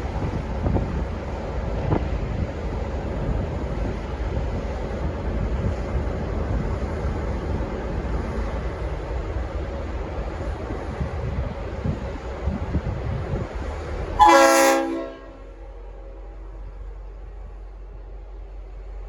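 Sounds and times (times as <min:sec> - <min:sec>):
wind buffeting microphone: 0:00.0 - 0:14.2
diesel locomotive rumbling: 0:00.0 - 0:19.0.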